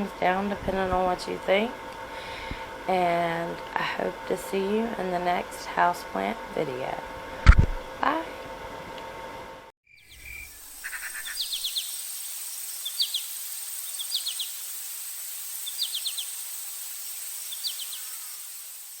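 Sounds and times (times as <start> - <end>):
bird chirping: 9.9 - 14.8, 15.6 - 18.6
steady hiss: 10.1 - 19.0.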